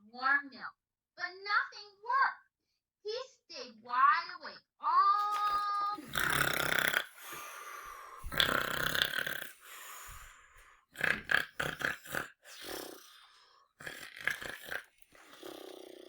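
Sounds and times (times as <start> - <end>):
person imitating snoring: 5.3 - 16.0.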